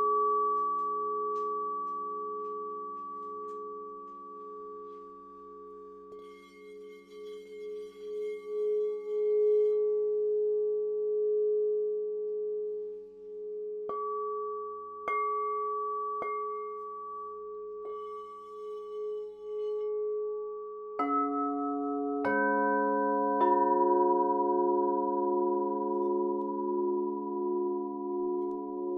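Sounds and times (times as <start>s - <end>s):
singing bowls ringing: 0.0s - 11.3s, 13.8s - 28.9s
singing bowls being struck: 21.0s - 28.9s.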